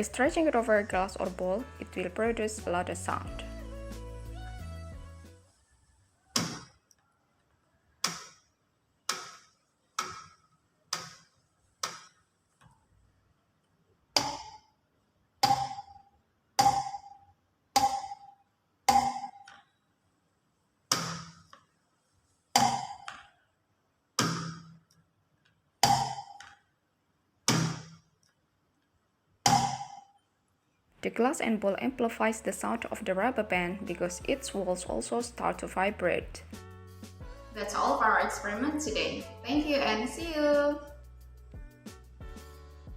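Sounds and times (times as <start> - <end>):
rubber band twangs: 6.4 - 6.8, 8.0 - 12.2, 14.2 - 14.8, 15.4 - 19.5, 20.9 - 21.6, 22.5 - 23.3, 24.2 - 24.9, 25.8 - 26.6, 27.4 - 28.2, 29.4 - 30.2.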